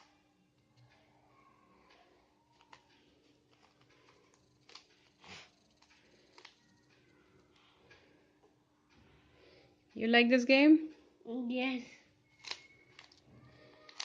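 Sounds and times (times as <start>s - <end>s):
rubik's cube clicking: 12.4s - 14.0s.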